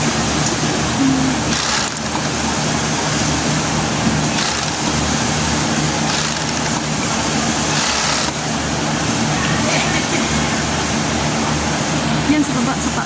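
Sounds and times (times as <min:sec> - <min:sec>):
sewing machine running: 0:01.2 - 0:08.6.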